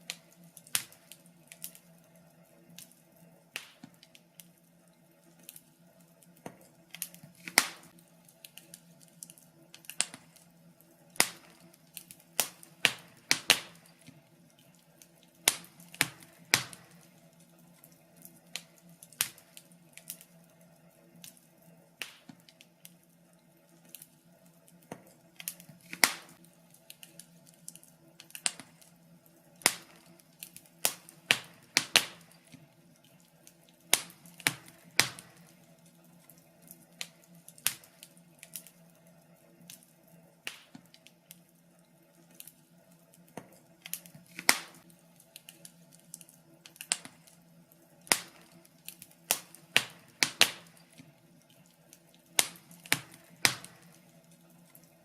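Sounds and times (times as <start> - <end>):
sharp fire pops: 0.0 - 1.9, 3.6 - 4.5, 6.4 - 10.5, 11.1 - 14.2, 15.1 - 17.4, 18.2 - 20.3, 22.0 - 22.7, 24.9 - 29.0, 29.6 - 32.6, 33.8 - 35.7, 36.6 - 38.7, 40.4 - 41.0, 43.4 - 47.4, 48.0 - 51.1, 52.3 - 54.1
wood fire crackling: 0.0 - 55.0.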